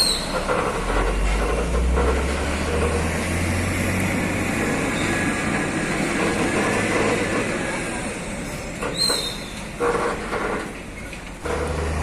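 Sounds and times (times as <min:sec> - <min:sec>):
short high squeak: 0:00.0 - 0:00.4, 0:08.9 - 0:09.7
road and machinery noise: 0:00.0 - 0:12.0
truck diesel engine drone: 0:00.0 - 0:12.0.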